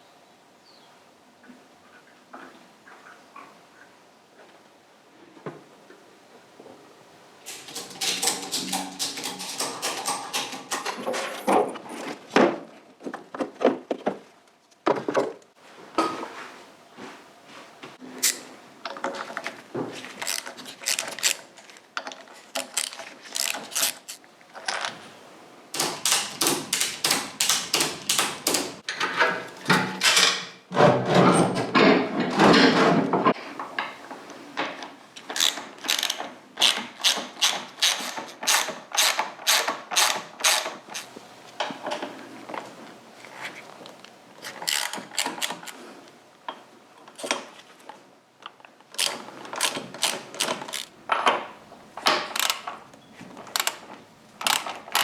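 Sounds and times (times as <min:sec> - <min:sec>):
ratchet spanner clicking: 0:25.8 - 0:28.8.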